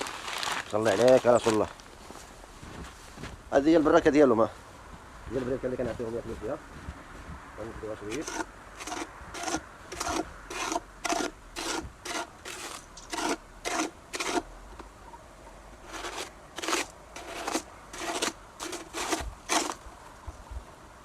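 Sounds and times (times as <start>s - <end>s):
snow crunching: 0.0s - 4.3s.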